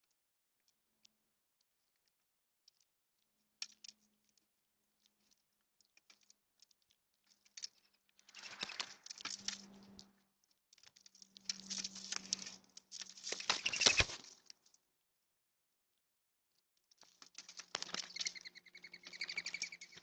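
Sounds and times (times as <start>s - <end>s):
birds pecking at a feeder: 3.6s - 14.5s, 16.9s - 20.0s.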